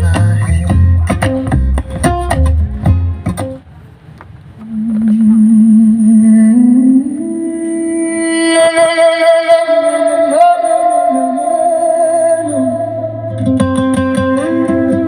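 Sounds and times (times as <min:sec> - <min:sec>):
quick plucked notes: 0:00.0 - 0:03.6, 0:11.4 - 0:15.0
wavering guitar line: 0:00.0 - 0:03.6, 0:04.6 - 0:15.0
deep bass note: 0:11.7 - 0:15.0.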